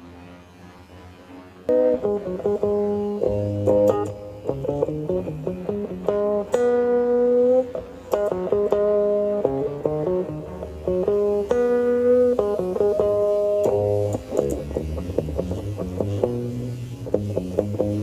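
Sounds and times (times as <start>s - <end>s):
plucked guitar melody: 1.7s - 18.0s.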